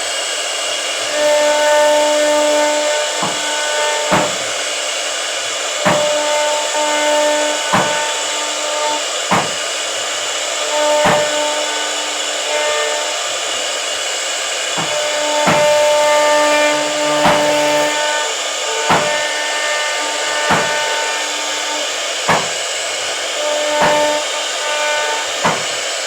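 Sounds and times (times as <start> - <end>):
router spindle cutting wood: 0.0 - 26.0
sharp knocks: 1.4 - 4.6, 5.8 - 9.7, 10.9 - 12.0, 14.8 - 18.1, 18.8 - 25.9.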